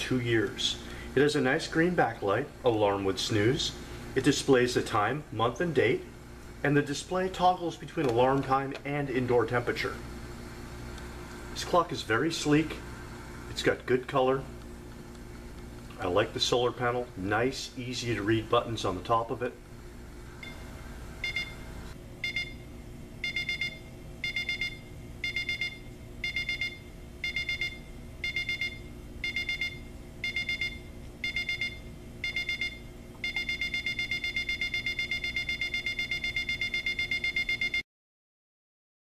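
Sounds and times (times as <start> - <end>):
alarm clock beeping: 21.2 - 21.6, 22.2 - 22.6, 23.2 - 37.8.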